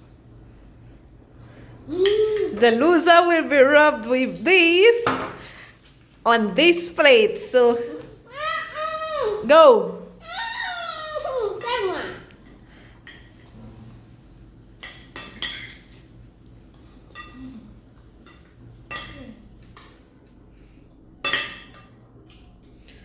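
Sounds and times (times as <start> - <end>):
cutlery clinking on plates: 14.8 - 20.1, 21.2 - 22.0.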